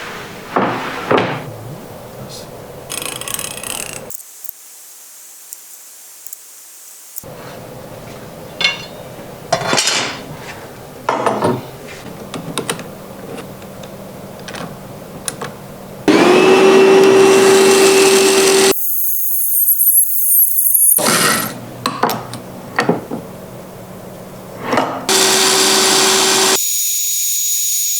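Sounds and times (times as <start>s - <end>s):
tools clicking and knocking: 12.2s - 15.5s
electric power tool running: 16.1s - 21.6s, 25.1s - 27.9s.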